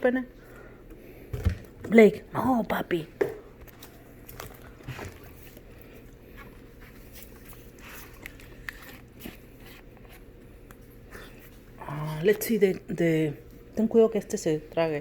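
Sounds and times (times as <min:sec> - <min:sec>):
plastic jug clicks and rustles: 0:01.3 - 0:02.0, 0:03.2 - 0:05.6.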